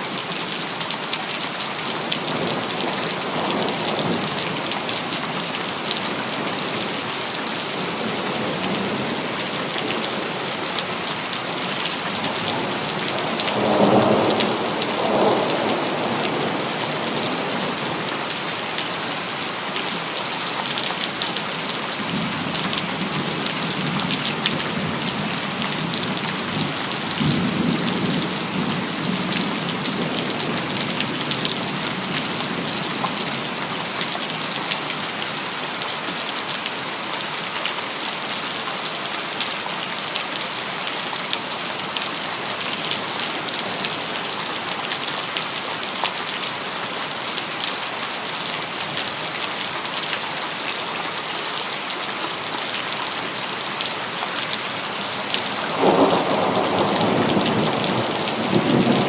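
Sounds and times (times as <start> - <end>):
steady rain falling: 0.0 - 59.0
thunder rumbling: 55.7 - 59.0.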